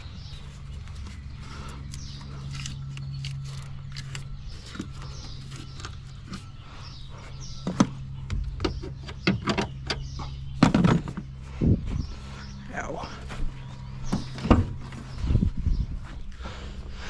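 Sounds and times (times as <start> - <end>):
steady low hum: 0.0 - 17.0
knocking and rattling: 7.6 - 11.4.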